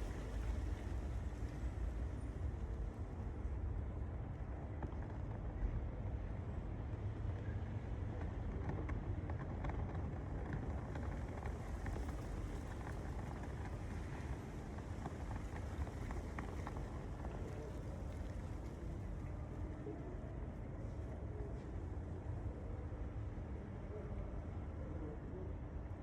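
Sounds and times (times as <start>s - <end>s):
small ticks and rustles: 8.0s - 19.7s.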